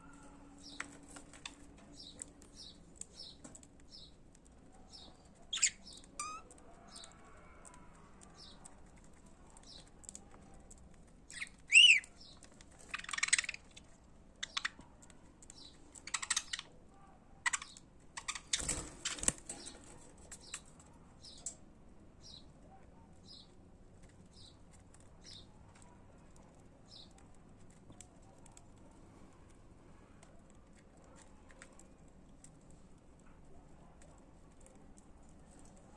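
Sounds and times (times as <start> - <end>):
raspy bird chatter: 11.3 - 14.8, 15.5 - 16.7, 17.4 - 21.5
budgerigars chirping: 11.4 - 12.1.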